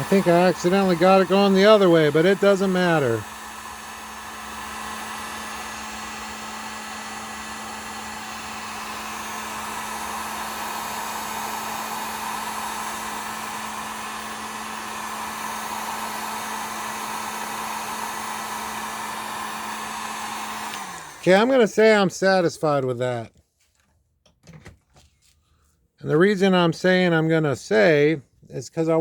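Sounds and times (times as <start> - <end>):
heat gun blowing air: 0.0 - 21.7.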